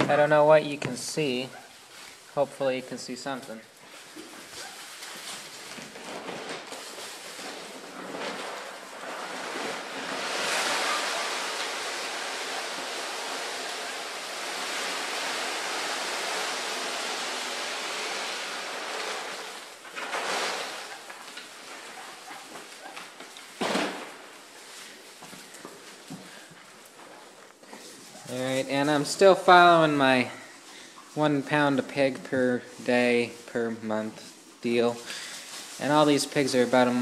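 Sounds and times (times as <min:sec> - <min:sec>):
feed pellets pouring: 0:06.6 - 0:22.8, 0:34.6 - 0:37.0.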